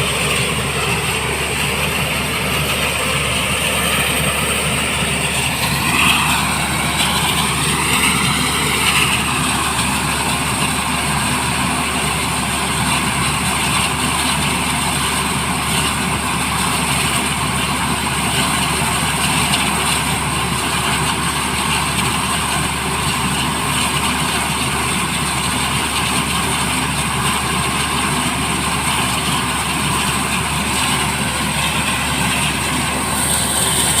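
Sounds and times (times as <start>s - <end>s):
helicopter turbine and rotor noise: 0.0s - 34.0s.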